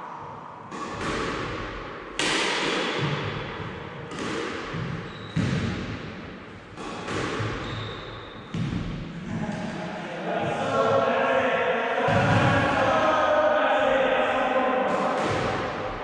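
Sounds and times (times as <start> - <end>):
squash ball hits ringing: 0.6 - 8.9.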